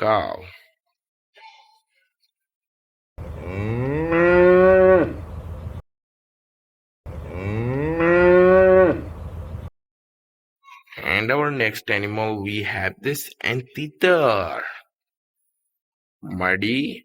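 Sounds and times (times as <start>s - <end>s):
cow mooing: 3.2s - 5.2s, 7.1s - 9.1s.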